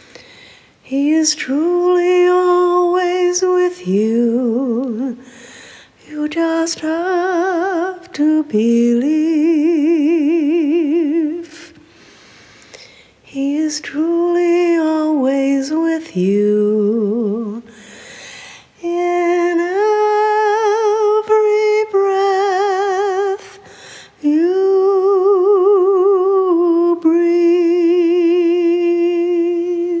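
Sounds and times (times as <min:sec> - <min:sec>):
woman singing wordless melody: 0:00.0 - 0:12.2, 0:12.8 - 0:30.0
lower voice singing harmony: 0:00.8 - 0:11.9, 0:13.3 - 0:17.8, 0:18.8 - 0:30.0.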